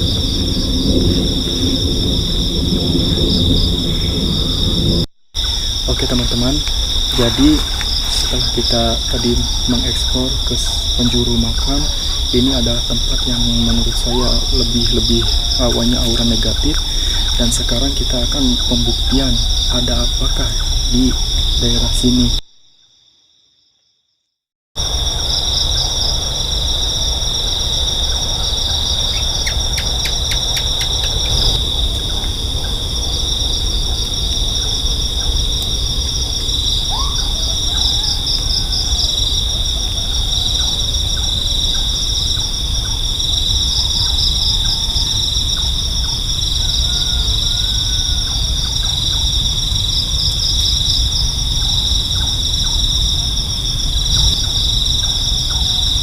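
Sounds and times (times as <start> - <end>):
constant low rumble: 0.0 - 22.4
crickets and insects chirring: 0.0 - 24.1, 24.8 - 56.0.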